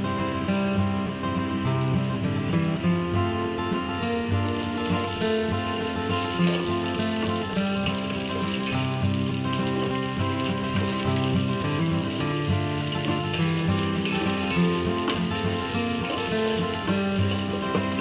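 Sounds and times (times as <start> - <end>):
background music: 0.0 - 18.0
food sizzling in hot oil: 4.4 - 18.0.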